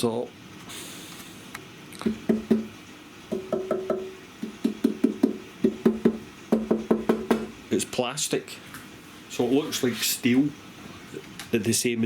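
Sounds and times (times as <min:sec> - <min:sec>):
hollow knocks on plastic: 0:02.0 - 0:02.7, 0:03.3 - 0:07.6.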